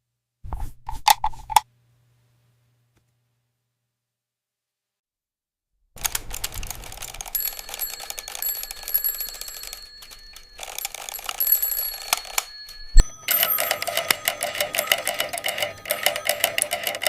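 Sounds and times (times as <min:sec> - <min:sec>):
mechanical alarm clocks ringing: 0:07.0 - 0:17.0.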